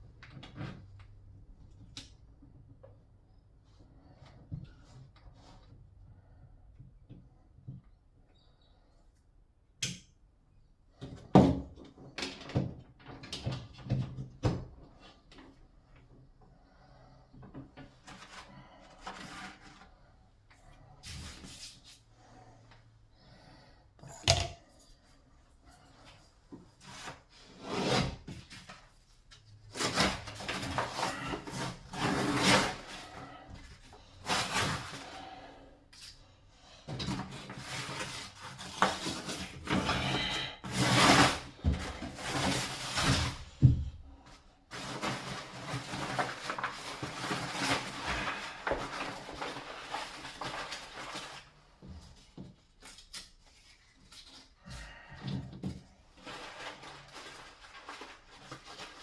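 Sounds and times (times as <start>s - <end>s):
rubbing and scraping: 29.6s - 35.4s.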